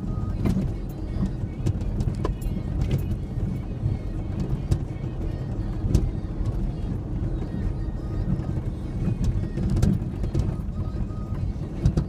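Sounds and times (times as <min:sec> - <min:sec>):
truck and tyres rumbling: 0:00.0 - 0:12.0.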